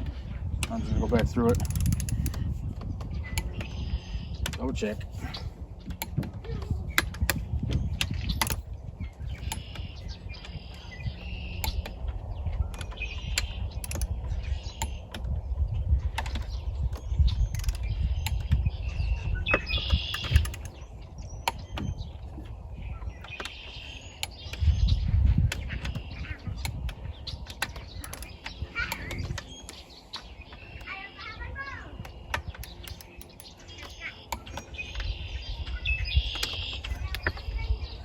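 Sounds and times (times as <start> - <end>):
torque wrench clicks: 0.6 - 2.6, 8.0 - 8.6, 12.7 - 15.3, 16.2 - 18.6, 26.6 - 29.9, 32.0 - 35.1
rapid ratchet ticking: 1.0 - 2.6.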